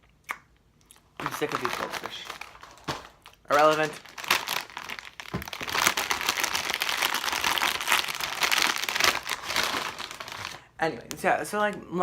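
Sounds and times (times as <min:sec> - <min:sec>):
plastic bag crinkling: 0:01.1 - 0:10.7.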